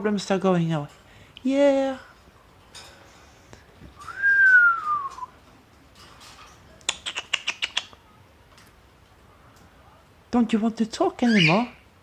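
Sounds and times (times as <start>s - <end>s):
bird whistling: 11.3s - 11.7s.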